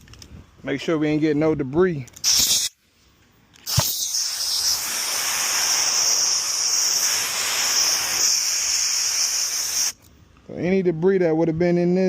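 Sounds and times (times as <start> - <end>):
air nozzle click: 2.2 - 2.7, 3.6 - 8.5
compressed air hissing: 2.2 - 2.8, 3.6 - 10.0.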